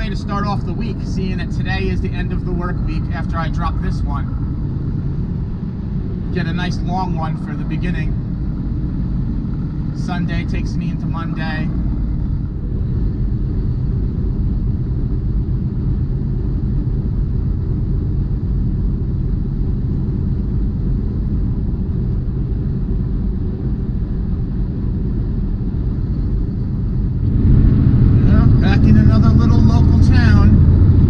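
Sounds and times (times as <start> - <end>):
diesel truck engine rumble: 0.0 - 31.0
road noise: 0.0 - 31.0.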